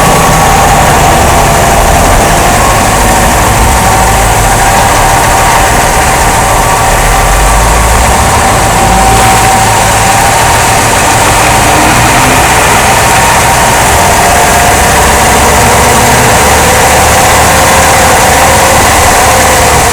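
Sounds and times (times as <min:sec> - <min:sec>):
car engine rumbling: 0:00.0 - 0:19.9.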